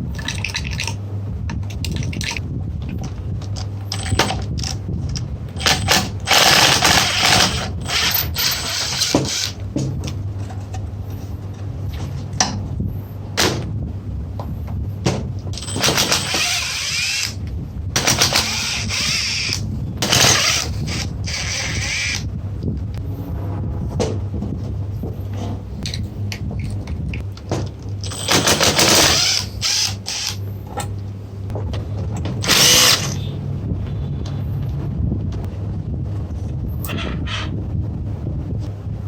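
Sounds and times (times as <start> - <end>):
steady low hum: 0.0 - 39.0
ratchety mechanical rattle: 3.9 - 4.8, 5.6 - 9.6, 15.6 - 17.4, 18.0 - 22.2, 28.0 - 30.4, 32.4 - 33.2.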